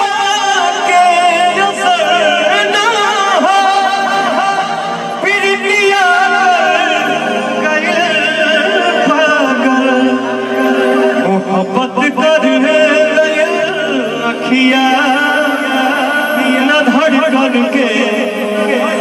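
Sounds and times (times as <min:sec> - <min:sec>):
person singing wavering melody: 0:00.0 - 0:19.0.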